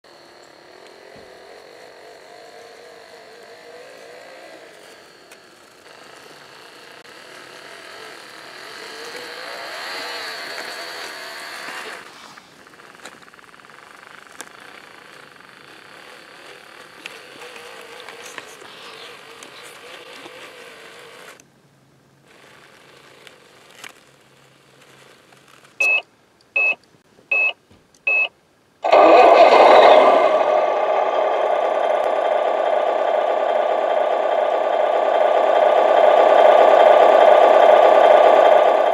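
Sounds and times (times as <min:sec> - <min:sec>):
electric toy motors whining: 0:00.1 - 0:21.4, 0:22.3 - 0:25.7
short high beeps: 0:25.8 - 0:26.0, 0:26.6 - 0:28.3.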